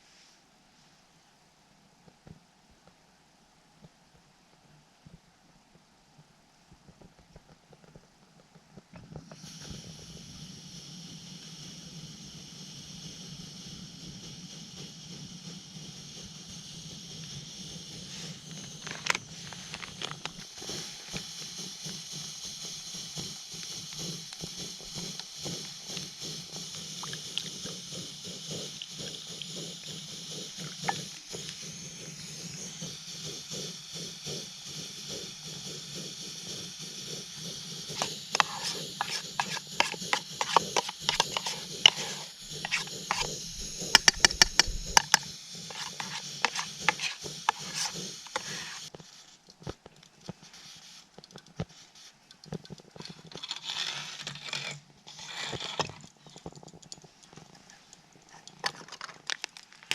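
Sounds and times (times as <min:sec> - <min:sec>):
camp stove burner hiss: 0:09.1 - 0:59.9
metal spoon scraping a pot: 0:37.9 - 0:48.9, 0:53.1 - 0:56.4.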